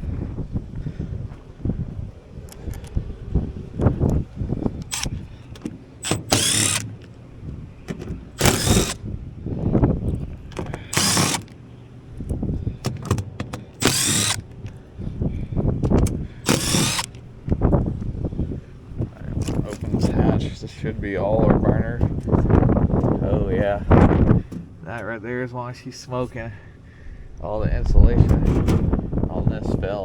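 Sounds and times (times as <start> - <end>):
handling knocks and clunks: 3.8 - 11.6, 12.3 - 14.8
power driver spinning out screws: 4.8 - 7.1, 8.3 - 9.0, 10.7 - 11.6, 12.9 - 14.5, 16.4 - 17.2.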